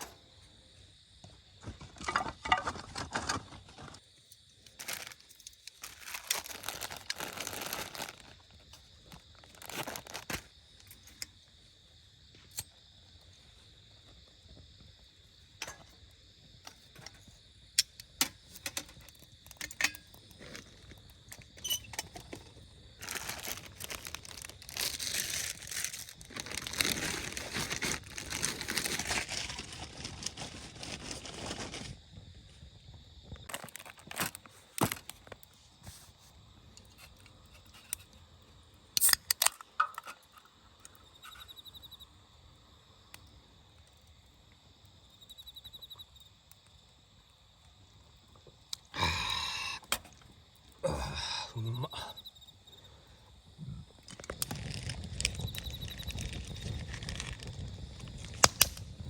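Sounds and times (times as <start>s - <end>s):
crickets chirping: 0.0s - 59.0s
crinkling and rustling: 1.6s - 11.2s, 18.6s - 32.0s, 33.4s - 36.3s, 54.0s - 58.9s.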